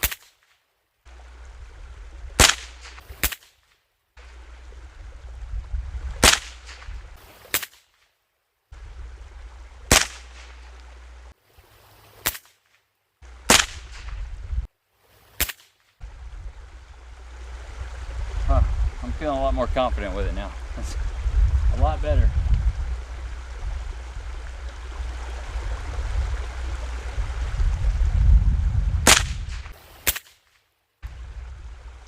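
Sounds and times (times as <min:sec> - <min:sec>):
wind rumble on microphone: 0:01.1 - 0:03.2, 0:04.2 - 0:07.2, 0:08.7 - 0:11.3, 0:13.2 - 0:14.7, 0:16.0 - 0:29.8, 0:31.0 - 0:32.0
rifle shots cracking: 0:02.4 - 0:03.6, 0:06.2 - 0:06.8, 0:09.9 - 0:10.6, 0:13.5 - 0:14.1, 0:29.1 - 0:30.4.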